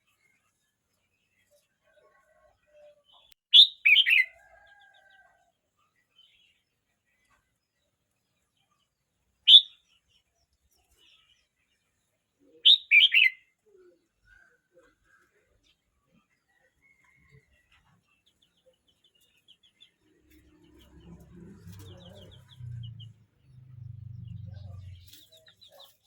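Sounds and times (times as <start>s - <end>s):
bird singing: 9.5s - 10.0s, 18.4s - 26.0s.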